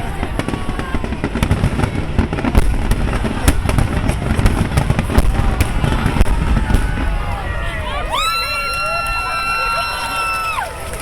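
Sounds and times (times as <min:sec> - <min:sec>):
fireworks bangs and crackles: 0:00.0 - 0:11.0
low rumble of bursting shells: 0:00.4 - 0:08.0.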